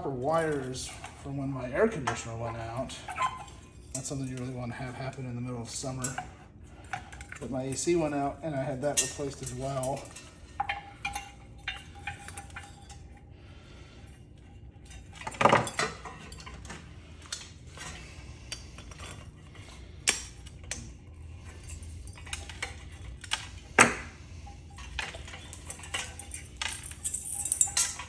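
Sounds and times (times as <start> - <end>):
metal scrap clinking and clattering: 5.8 - 13.2, 14.8 - 28.0.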